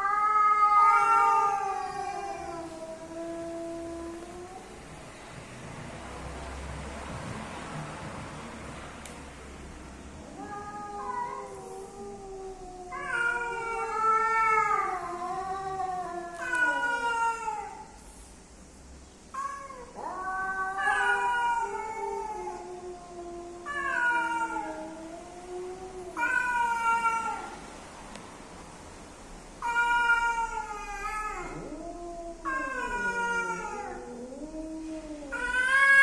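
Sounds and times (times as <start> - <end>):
cats caterwauling: 0.0 - 5.1, 10.1 - 18.0, 19.2 - 27.7, 29.5 - 36.0.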